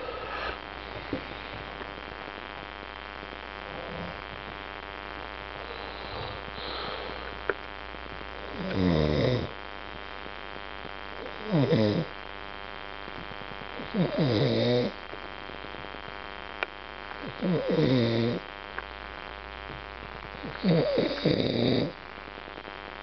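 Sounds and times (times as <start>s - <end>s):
man snoring loudly: 3.7s - 4.2s, 5.6s - 7.3s, 8.5s - 9.5s, 11.2s - 12.1s, 13.8s - 15.0s, 17.2s - 18.4s, 20.4s - 22.0s.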